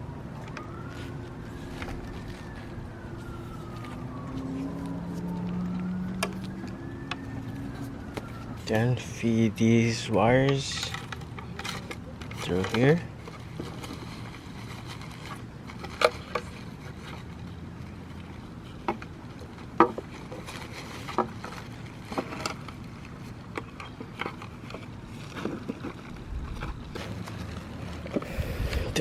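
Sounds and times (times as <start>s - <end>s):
steady low hum: 13.0s - 29.0s.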